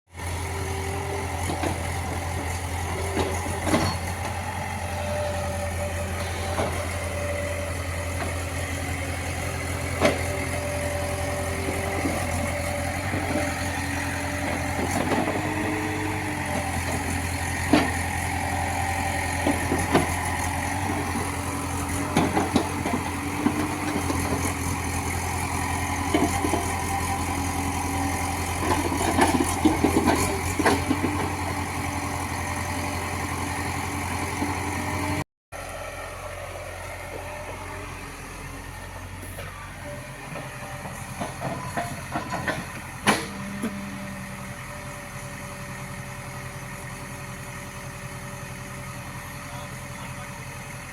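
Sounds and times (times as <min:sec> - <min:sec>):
heavy diesel engine running: 0:00.1 - 0:50.9.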